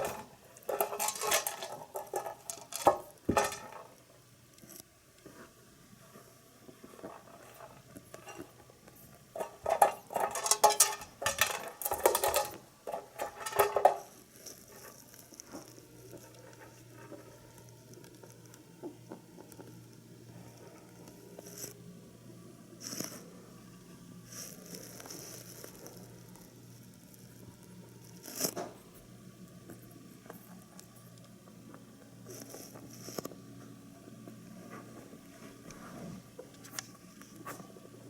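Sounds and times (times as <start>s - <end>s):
rabbit eating crunches: 24.3s - 38.0s.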